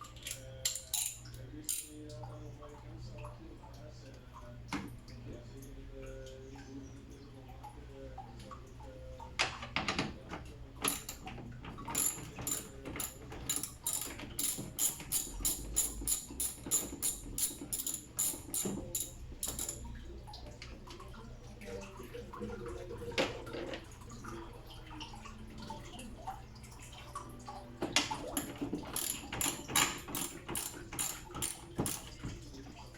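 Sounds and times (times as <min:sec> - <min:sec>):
ratchet wrench clicking: 0:12.0 - 0:19.8, 0:29.0 - 0:32.1.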